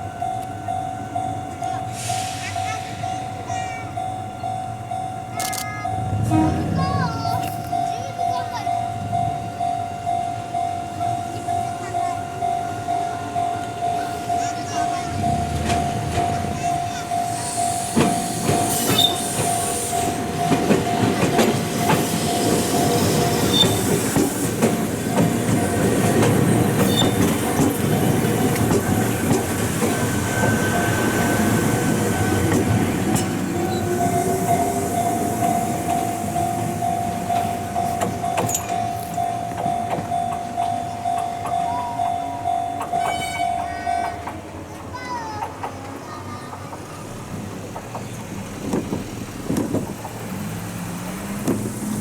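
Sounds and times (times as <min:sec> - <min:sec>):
steady high tone: 0:00.0 - 0:24.0, 0:24.6 - 0:44.4
electric train rumbling past: 0:00.0 - 0:52.0
wheels clattering over rail joints: 0:11.0 - 0:52.0.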